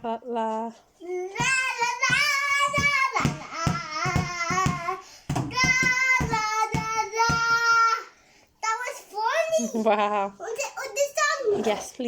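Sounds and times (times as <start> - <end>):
toddler singing high notes: 1.1 - 8.1
soft thumping beat: 1.4 - 7.7.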